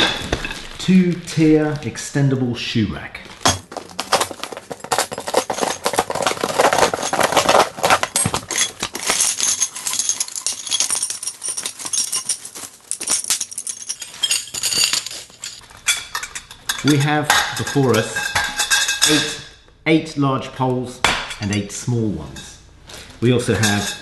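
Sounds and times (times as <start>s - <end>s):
metal poles clinking and rattling: 0.0s - 2.0s, 3.4s - 19.6s, 23.2s - 24.0s.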